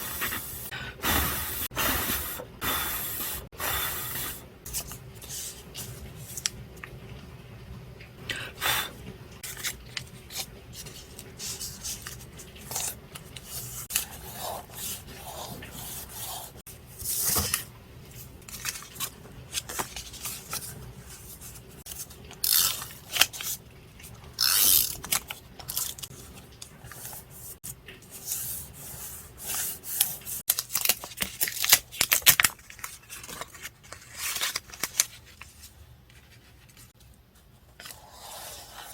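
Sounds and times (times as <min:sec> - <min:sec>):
paper rustling and tearing: 0:29.5 - 0:37.0.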